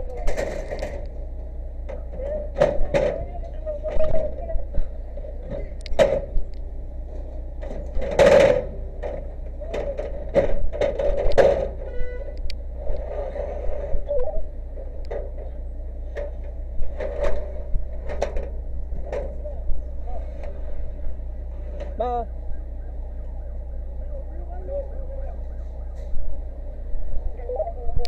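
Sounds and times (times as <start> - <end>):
steady hum: 0.0 - 28.0
knocks and clattering: 1.9 - 3.3, 5.4 - 6.5, 7.1 - 11.9, 14.8 - 19.4.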